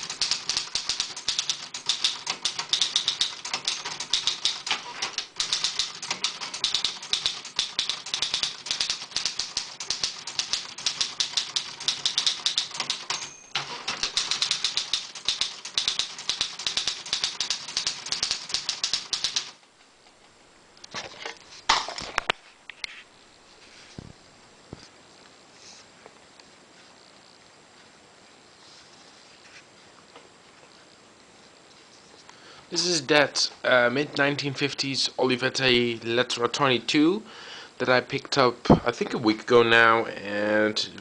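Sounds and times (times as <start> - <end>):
typewriter typing fast: 0.0 - 19.6.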